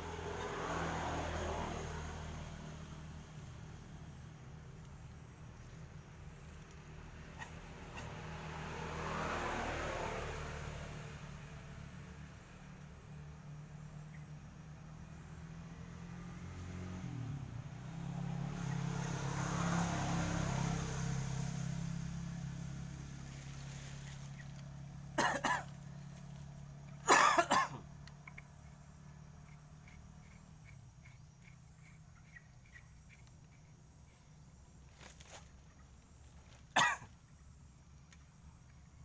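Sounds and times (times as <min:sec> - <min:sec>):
person coughing: 0:25.2 - 0:25.7, 0:27.1 - 0:27.8, 0:36.8 - 0:37.1.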